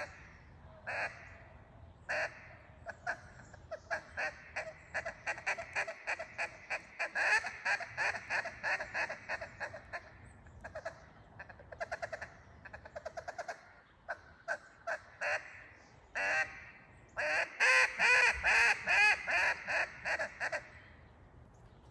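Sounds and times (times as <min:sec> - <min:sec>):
duck call quacks: 0:00.0 - 0:01.4, 0:02.1 - 0:20.8.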